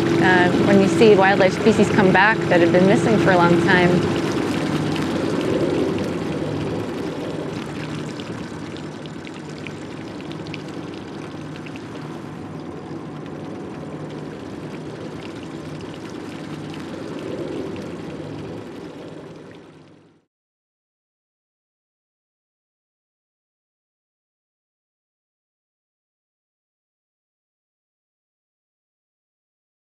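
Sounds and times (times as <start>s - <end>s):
small boat motor running: 0.0s - 20.2s
water rushing along hull: 0.0s - 20.3s.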